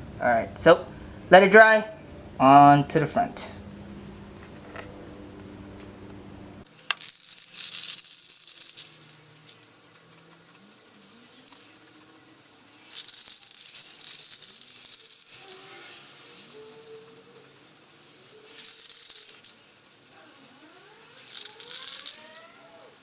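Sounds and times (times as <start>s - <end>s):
spray can hissing and rattling: 6.6s - 23.0s.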